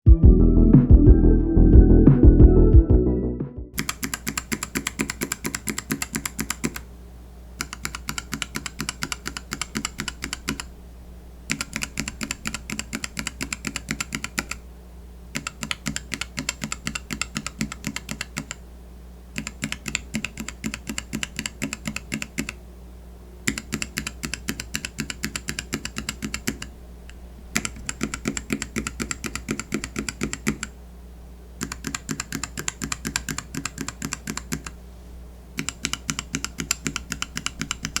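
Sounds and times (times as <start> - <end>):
keyboard switches clicking: 3.8 - 6.8, 7.6 - 10.7, 11.5 - 14.6, 15.4 - 18.6, 19.4 - 22.6, 23.5 - 30.7, 31.6 - 34.8, 35.6 - 38.0.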